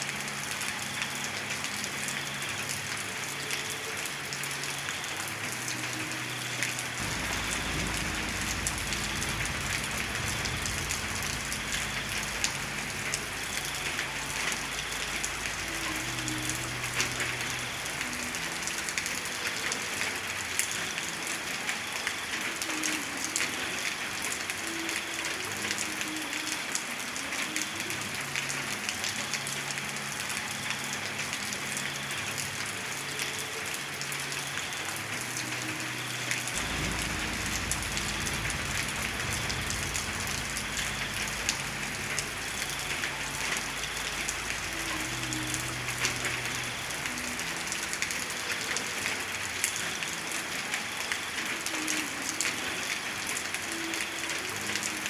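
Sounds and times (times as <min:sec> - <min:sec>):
heavy rain hissing: 0:00.0 - 0:55.0
low rumble: 0:07.0 - 0:13.0, 0:36.6 - 0:42.2.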